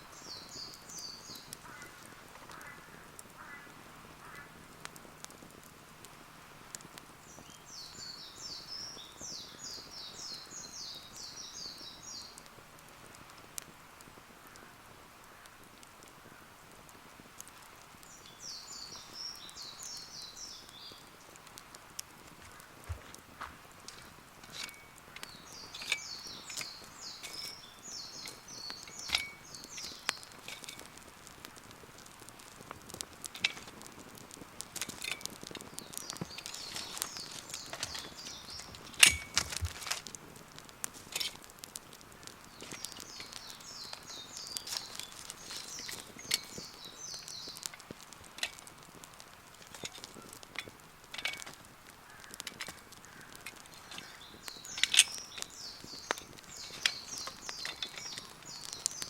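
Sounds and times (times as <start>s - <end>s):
bird chirping: 0.0s - 4.6s, 7.2s - 12.5s, 18.0s - 21.4s, 23.9s - 30.8s, 35.6s - 39.7s, 42.3s - 47.8s, 52.1s - 59.0s
campfire crackling and popping: 0.0s - 59.0s.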